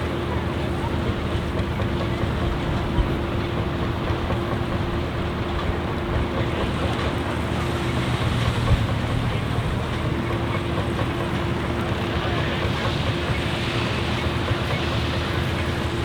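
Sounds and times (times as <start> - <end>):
combine machine noise: 0.0 - 16.0
constant machine whine: 0.0 - 16.0.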